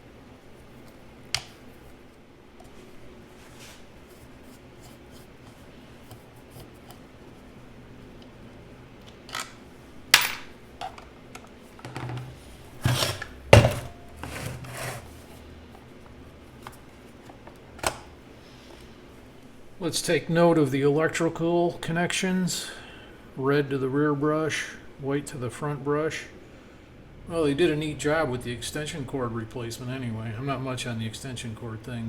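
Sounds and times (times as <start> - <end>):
knocks and scrapes of tool parts: 11.8 - 15.4.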